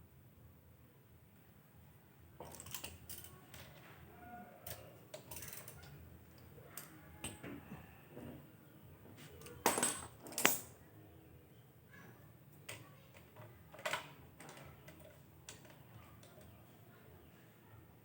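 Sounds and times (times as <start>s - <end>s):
metal tools and parts clinking: 2.4s - 3.9s, 4.6s - 6.0s, 9.4s - 10.8s.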